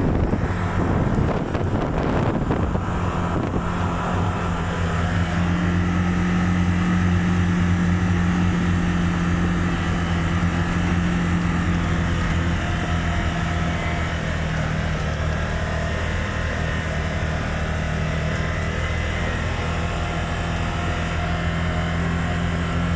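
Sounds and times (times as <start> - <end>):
wind noise: 0.0 - 15.4
utility vehicle engine running: 0.0 - 22.9.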